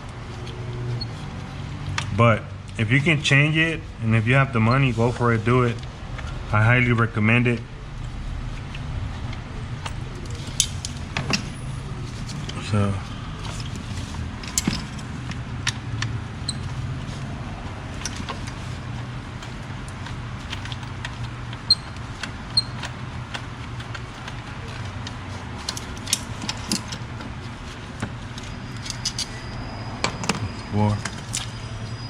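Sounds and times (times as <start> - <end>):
steady low hum: 0.0 - 32.0
clicks and clinks of tools: 28.4 - 29.4.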